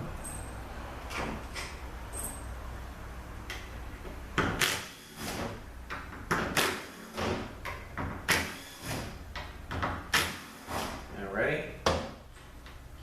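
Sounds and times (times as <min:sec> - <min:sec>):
metallic clinks and scrapes: 0:02.1 - 0:02.5.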